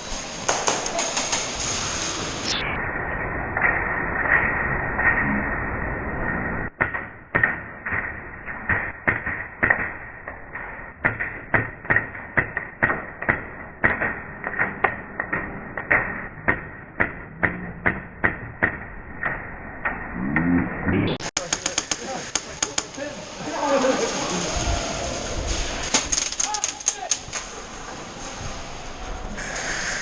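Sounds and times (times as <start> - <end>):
airsoft gun shots: 21.3 - 23.0
steady hiss: 21.4 - 30.0.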